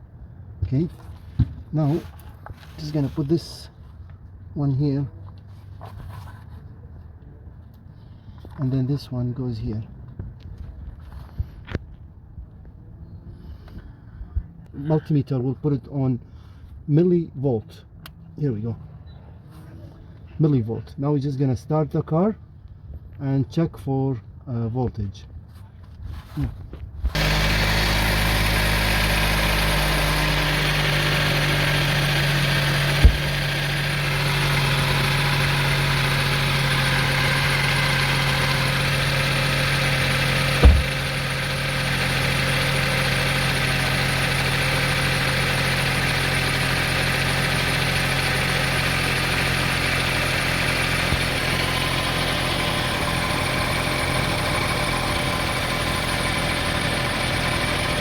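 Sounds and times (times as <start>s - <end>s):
car engine idling: 27.2s - 58.0s
sharp knocks: 32.8s - 33.5s, 40.4s - 41.2s.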